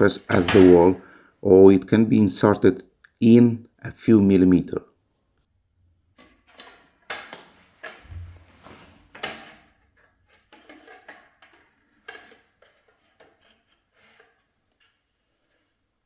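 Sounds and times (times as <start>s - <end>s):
scraping and tapping hand work: 6.1s - 16.0s.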